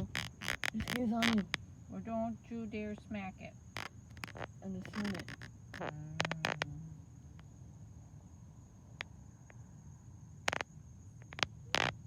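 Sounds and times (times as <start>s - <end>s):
crickets trilling: 0.0s - 12.0s
faint clicks: 3.8s - 6.8s.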